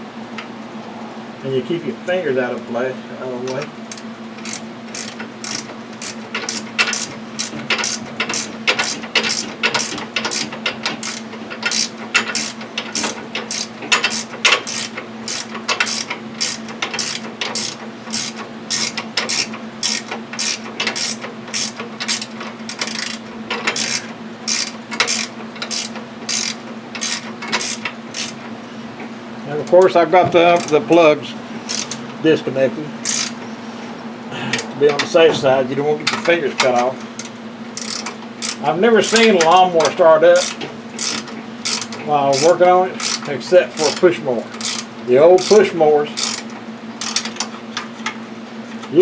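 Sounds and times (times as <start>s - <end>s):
steady low hum: 0.0s - 48.8s
ratchet wrench clicking: 3.9s - 28.4s, 30.6s - 30.8s, 31.7s - 32.0s, 33.0s - 33.4s, 37.2s - 47.4s.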